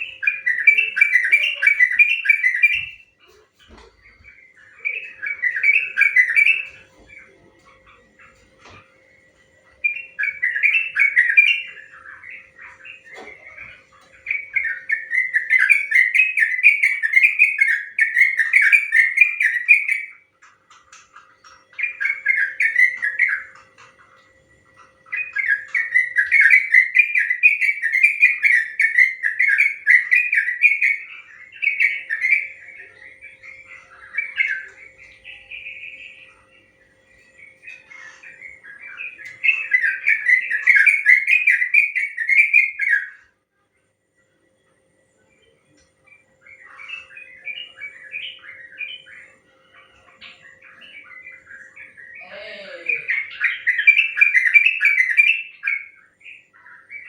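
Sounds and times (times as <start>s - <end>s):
faint steady hum: 0.0s - 57.0s.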